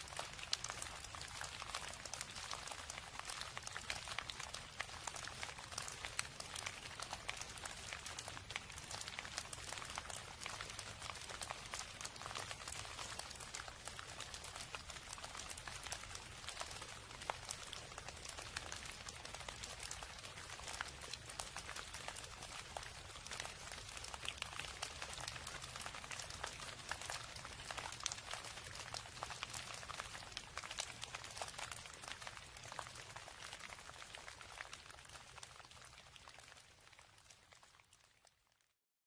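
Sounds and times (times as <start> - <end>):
rain pattering: 0.0 - 38.7.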